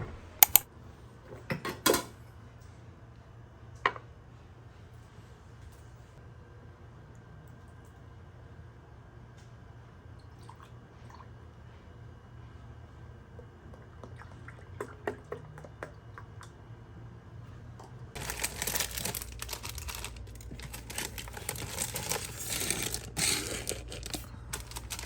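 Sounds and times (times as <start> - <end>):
crinkling rustle of handling: 18.2 - 25.0.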